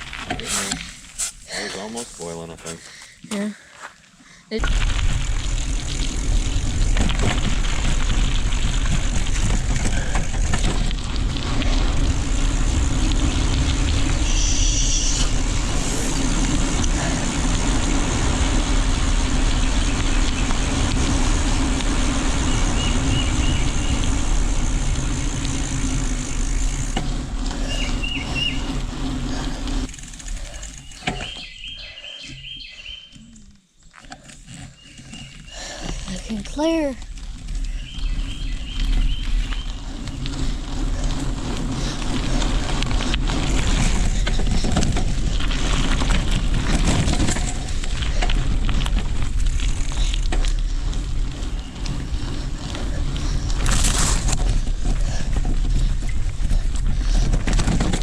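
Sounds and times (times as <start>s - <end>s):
wind rushing while riding: 4.6s - 33.0s, 34.3s - 58.0s
birds chirping: 22.4s - 24.2s, 27.6s - 28.8s, 30.3s - 33.8s, 34.4s - 40.6s.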